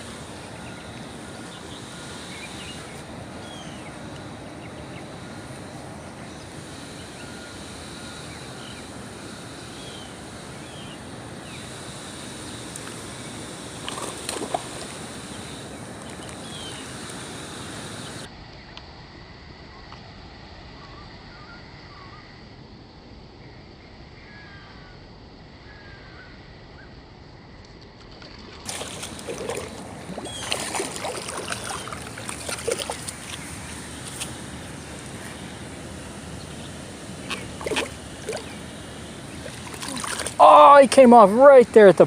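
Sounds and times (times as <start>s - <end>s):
creek water splashing: 0.0s - 18.3s, 28.2s - 42.0s.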